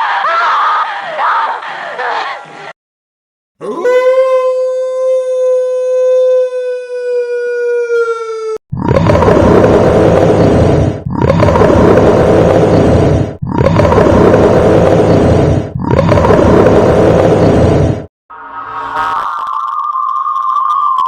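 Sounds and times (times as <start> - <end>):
deep rough roar: 8.8 - 18.1.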